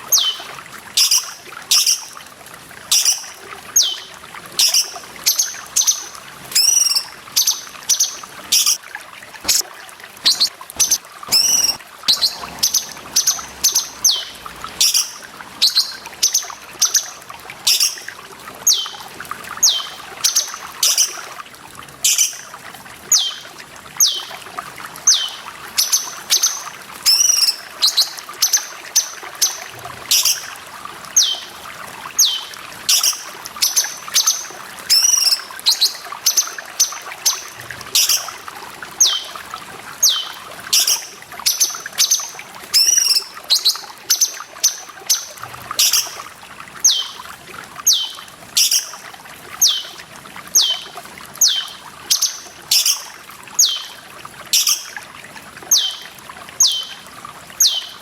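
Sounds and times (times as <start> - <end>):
trickling water: 0.0 - 58.0
bulbul calling: 0.1 - 2.1, 2.9 - 8.8, 9.4 - 9.6, 10.2 - 17.1, 17.7 - 18.1, 18.7 - 19.0, 19.6 - 21.1, 23.1 - 23.4, 25.1 - 30.4, 31.2 - 31.4, 32.2 - 38.4, 39.0 - 39.3, 40.0 - 46.2, 46.8 - 47.2, 47.9 - 49.0, 49.6 - 50.0, 50.6 - 54.0, 55.7 - 56.0, 56.6 - 57.0, 57.6 - 58.0.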